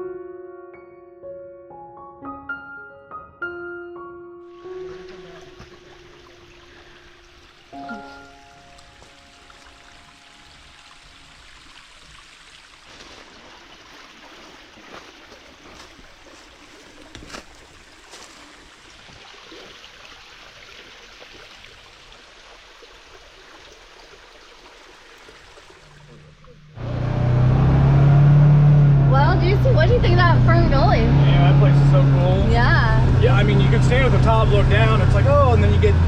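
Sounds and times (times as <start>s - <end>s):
faint splashes: 4.5s - 26.8s
flowing water: 4.5s - 36.0s.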